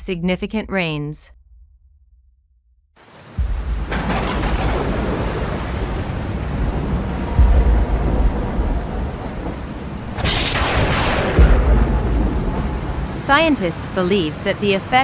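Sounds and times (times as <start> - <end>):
heavy low rumbles: 1.3 - 14.0
rain and wind rushing: 3.0 - 15.0.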